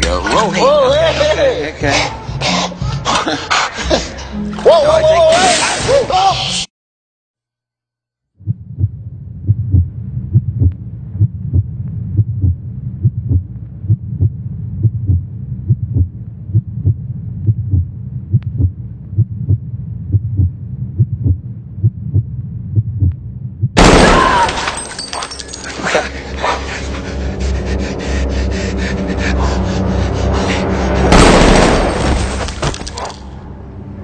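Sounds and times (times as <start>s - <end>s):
heartbeat thuds: 8.4s - 23.8s.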